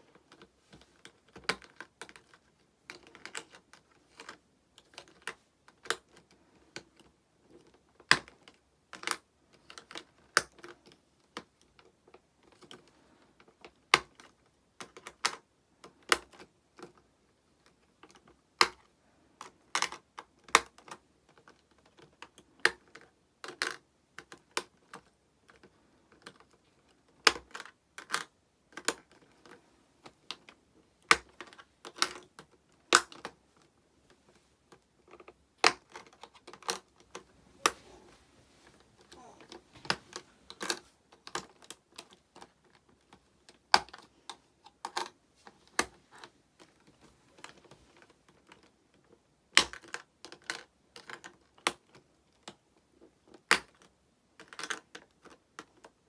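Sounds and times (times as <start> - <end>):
plastic pieces clicking and clacking: 27.1 - 33.7, 39.8 - 45.2, 49.6 - 52.5.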